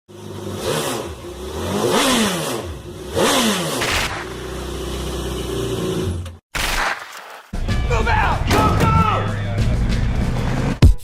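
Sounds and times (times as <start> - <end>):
engine revving: 0.1 - 6.4.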